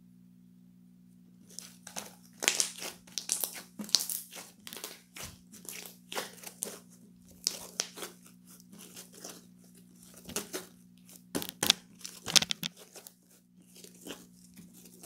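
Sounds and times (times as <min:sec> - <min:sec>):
steady low hum: 0:00.0 - 0:03.1
crinkling and crumpling: 0:01.4 - 0:15.0.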